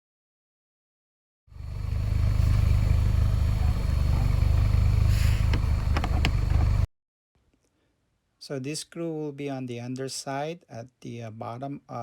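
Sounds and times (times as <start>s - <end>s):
engine running: 1.5s - 6.9s.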